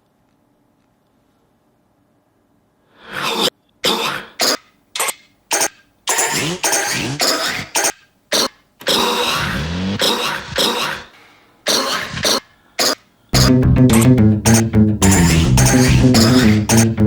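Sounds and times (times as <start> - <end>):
person coughing: 6.1 - 11.1, 11.7 - 13.0, 15.1 - 16.8.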